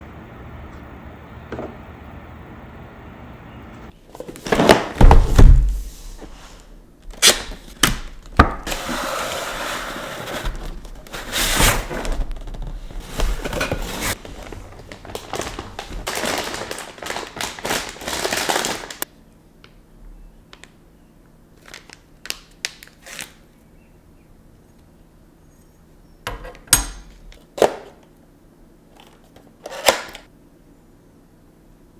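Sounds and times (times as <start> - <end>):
packaging rustling and scraping: 4.2 - 7.8, 8.6 - 19.0, 29.0 - 30.3.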